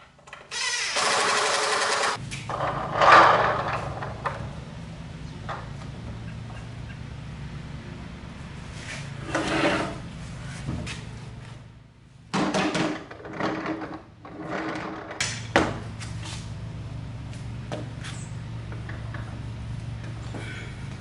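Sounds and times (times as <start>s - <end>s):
steady low hum: 2.2s - 12.4s.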